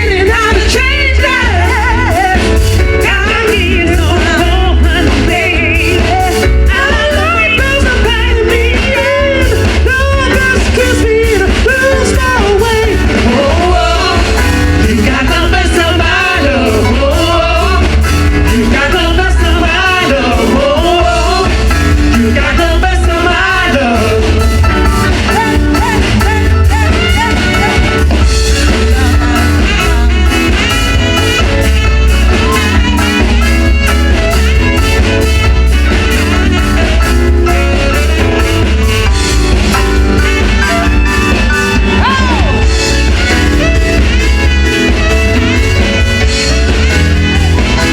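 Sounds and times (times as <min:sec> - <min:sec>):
person singing: 0:00.0 - 0:35.1
band playing soul music: 0:00.0 - 0:47.9
bass line: 0:00.0 - 0:47.9
electric guitar: 0:00.0 - 0:47.9.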